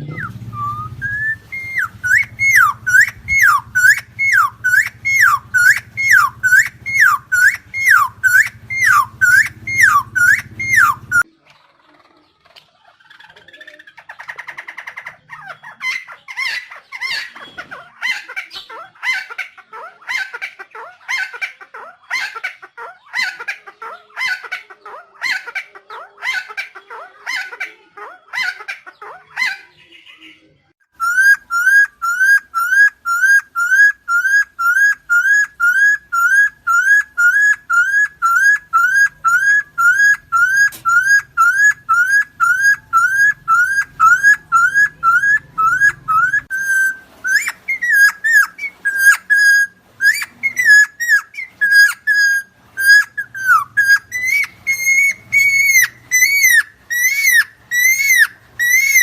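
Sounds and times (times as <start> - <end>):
rising whistled bird note: 0.0 - 11.2
bird giving harsh raspy calls: 0.0 - 11.3, 31.0 - 59.0.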